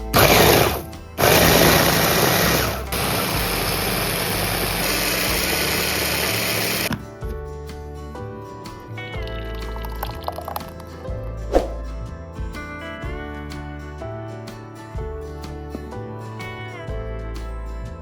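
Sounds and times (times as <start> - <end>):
electric food chopper running: 0.0 - 7.0
soft background music: 0.0 - 18.0.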